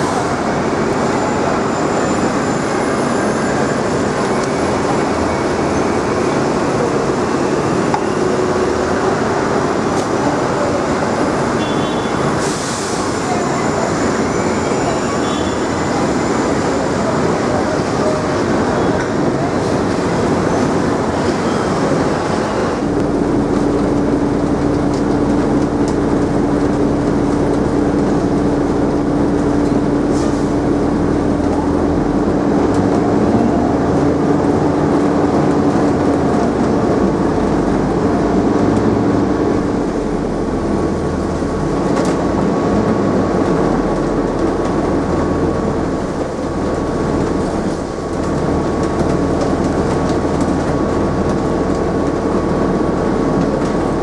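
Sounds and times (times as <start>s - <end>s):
train wheels rumbling on rails: 0.0s - 54.0s.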